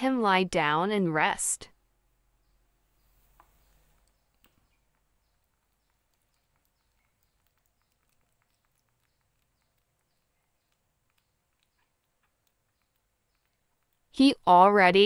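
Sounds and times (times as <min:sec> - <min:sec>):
soft clicks: 0:03.4 - 0:14.1.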